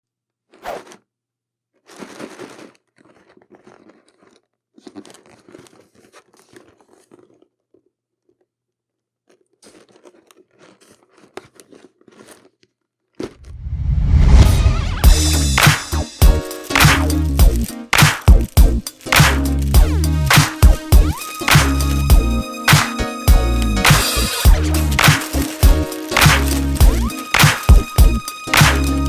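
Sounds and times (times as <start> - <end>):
packaging crinkling and tearing: 1.7 - 8.5, 9.2 - 13.4, 15.6 - 29.0
loud rising swell: 13.5 - 16.2
music: 14.4 - 29.0.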